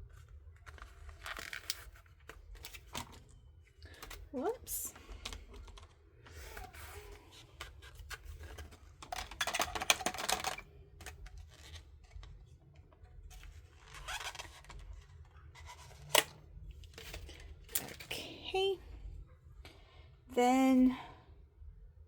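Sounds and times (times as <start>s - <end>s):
plastic packaging crinkling: 0.6s - 4.2s.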